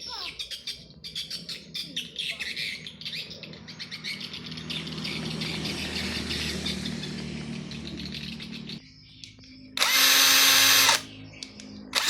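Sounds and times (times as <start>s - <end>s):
birds chirping: 0.0s - 12.0s
impact driver running: 9.8s - 11.1s.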